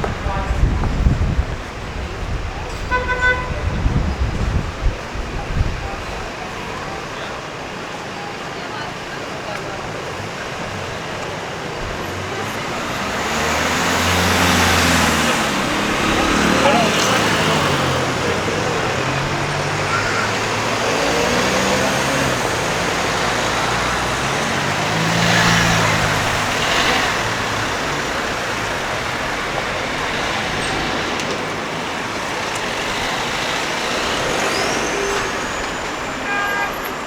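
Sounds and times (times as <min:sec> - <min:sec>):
cars driving past: 0:06.3 - 0:37.0.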